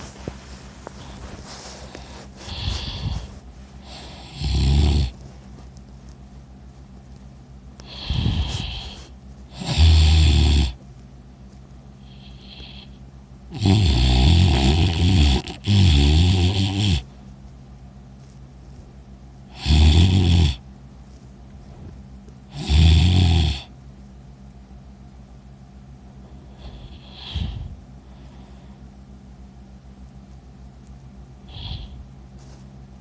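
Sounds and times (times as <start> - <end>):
soft breath: 0.0 - 4.4, 7.8 - 9.2, 26.2 - 29.0, 31.4 - 32.7
person snoring loudly: 2.5 - 5.1, 7.8 - 10.8, 13.5 - 17.0, 19.5 - 20.6, 22.5 - 23.7, 26.6 - 27.8, 31.5 - 32.0.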